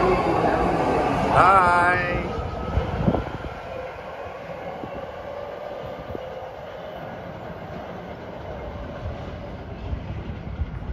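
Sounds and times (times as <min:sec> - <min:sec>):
faint train whine: 0:00.0 - 0:10.9
train rail rumble: 0:00.0 - 0:10.9.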